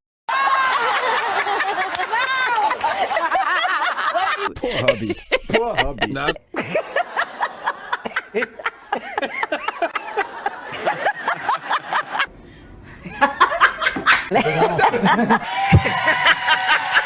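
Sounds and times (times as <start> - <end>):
snickering and chuckling: 0.9 - 12.3.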